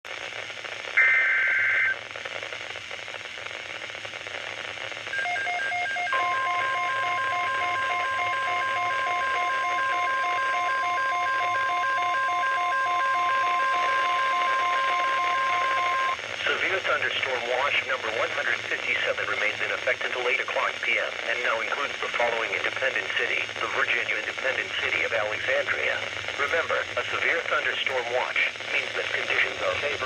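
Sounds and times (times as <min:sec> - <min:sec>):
radio static hiss: 0:00.1 - 0:30.0
steady warning alarm tone: 0:05.1 - 0:16.2.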